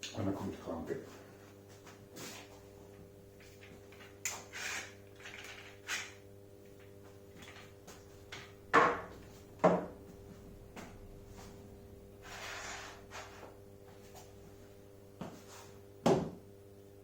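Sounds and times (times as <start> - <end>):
light scuffs and taps: 1.1 - 3.0.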